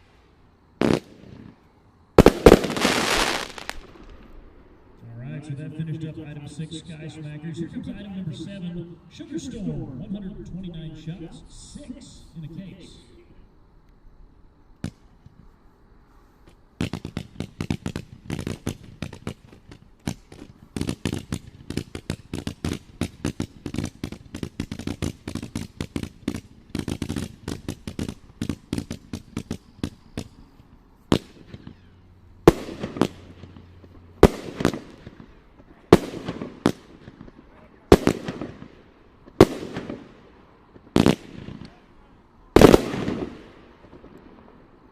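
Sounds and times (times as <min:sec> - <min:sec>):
firework bangs with crackle: 0:00.8 - 0:01.6, 0:02.2 - 0:04.4, 0:16.8 - 0:30.5, 0:31.1 - 0:41.8, 0:42.6 - 0:44.7.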